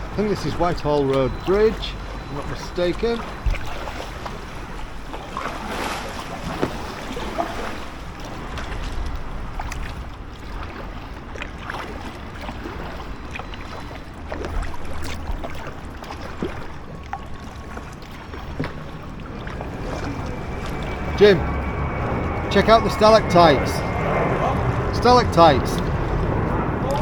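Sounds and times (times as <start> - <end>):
paddle splashes in water: 3.1 - 20.8
wind rumbling on microphone: 17.6 - 27.0.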